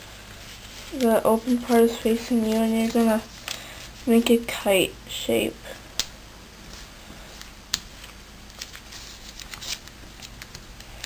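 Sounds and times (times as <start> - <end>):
paper rustling and crinkling: 0.1 - 4.4, 6.7 - 11.0.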